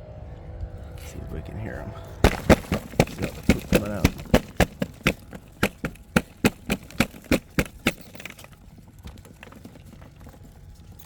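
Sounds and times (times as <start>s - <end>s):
knocking on wood: 2.3s - 8.4s.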